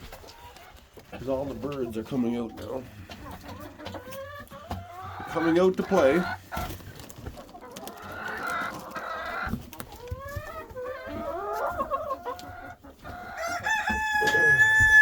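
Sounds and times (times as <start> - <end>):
chickens clucking: 0.0 - 15.0.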